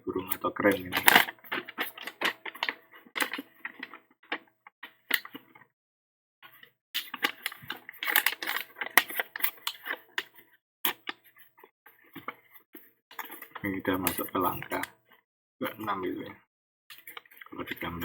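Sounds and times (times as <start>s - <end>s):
paper rustling and crackling: 0.7s - 4.0s, 7.0s - 10.4s.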